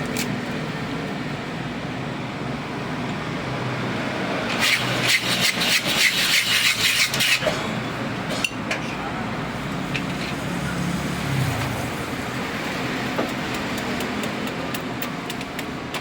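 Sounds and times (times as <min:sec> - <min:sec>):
blade scraping ice: 0:04.5 - 0:07.6.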